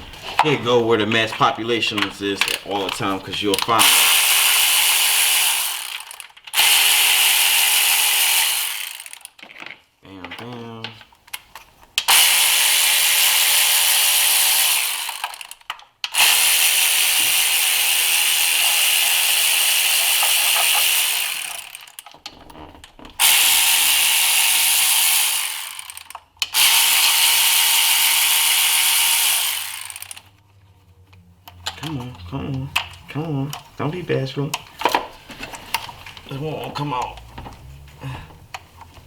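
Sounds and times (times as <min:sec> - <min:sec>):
cordless power tool spinning: 0:01.8 - 0:09.4, 0:12.0 - 0:30.4.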